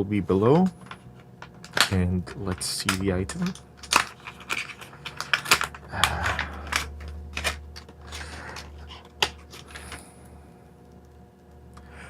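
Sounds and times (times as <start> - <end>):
packaging clicks and taps: 0.5 - 10.0
packaging rustling: 0.6 - 10.2.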